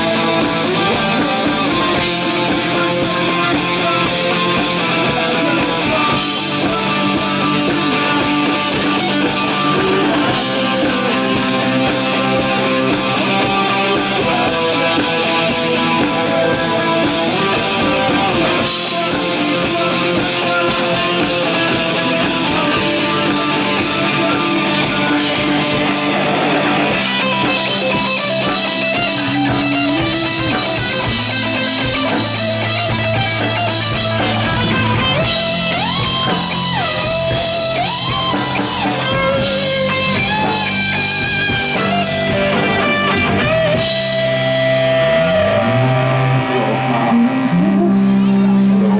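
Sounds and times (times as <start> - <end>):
drums: 0.0 - 48.9
electric guitar: 0.0 - 48.9.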